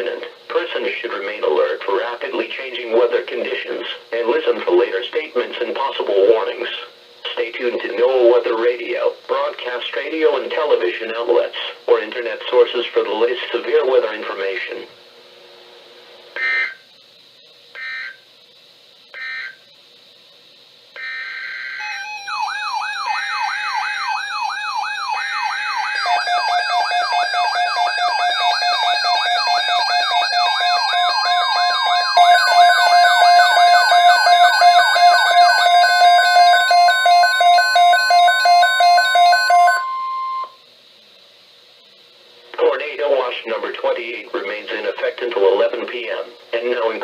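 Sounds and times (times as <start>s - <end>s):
warbling siren-like alert tone: 16.4s - 16.8s, 17.8s - 18.2s, 19.2s - 19.6s, 21.0s - 40.6s
digital data squawks: 16.4s - 16.9s, 17.8s - 18.2s, 19.1s - 19.7s, 21.0s - 40.6s
pulsing alarm tone: 16.4s - 16.9s, 17.7s - 18.3s, 19.1s - 19.7s, 21.0s - 40.6s
steady radio alert tone: 16.4s - 16.9s, 19.2s - 19.7s, 21.0s - 40.6s.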